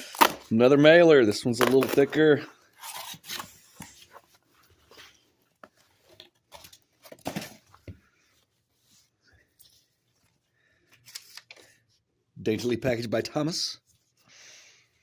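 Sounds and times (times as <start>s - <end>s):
cardboard tearing and rustling: 1.5s - 4.3s.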